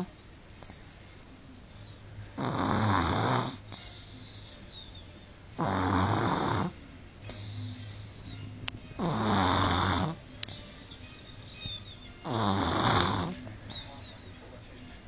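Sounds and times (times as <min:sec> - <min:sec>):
toddler snoring: 0:02.4 - 0:05.0, 0:05.6 - 0:08.3, 0:09.0 - 0:13.4.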